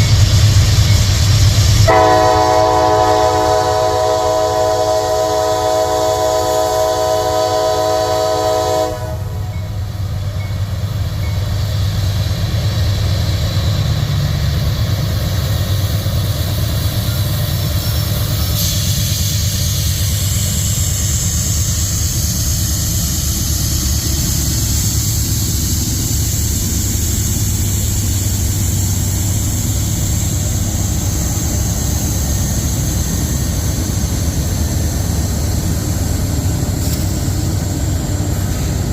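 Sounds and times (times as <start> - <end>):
diesel locomotives running: 0.0 - 38.9
locomotive horn chord: 1.9 - 9.7
steady high hiss: 8.9 - 38.9.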